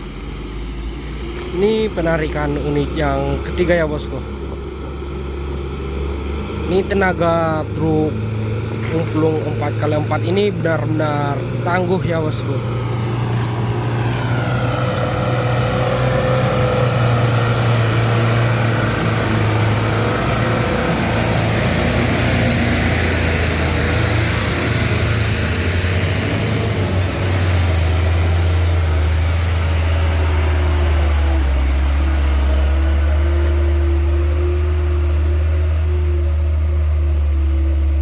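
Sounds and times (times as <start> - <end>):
truck diesel engines under load: 0.0 - 38.0.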